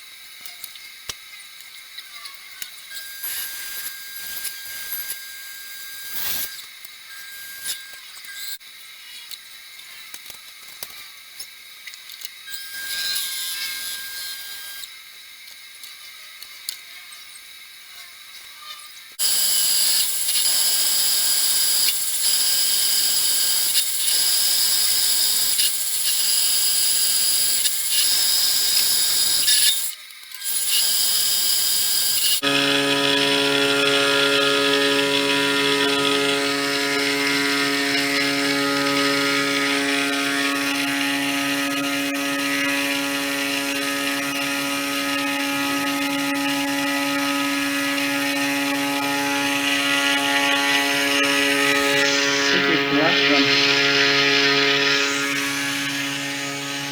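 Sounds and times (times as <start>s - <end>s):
spindle motor whining: 2.9s - 8.6s, 19.2s - 56.9s
lower-pitched tones: 32.1s - 56.9s.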